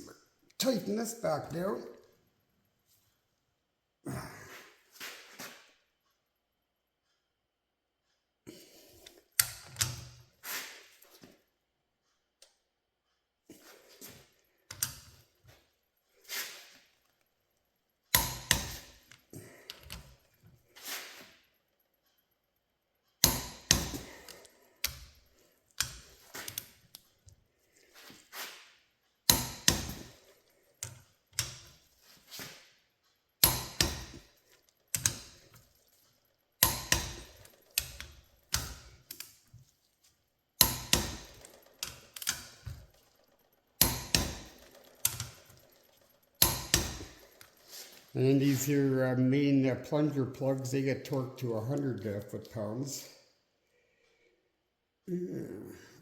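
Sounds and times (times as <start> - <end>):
wrench knocking on metal: 33.4 - 34.2, 36.6 - 38.8, 40.6 - 41.6, 43.8 - 45.2, 46.4 - 47.3.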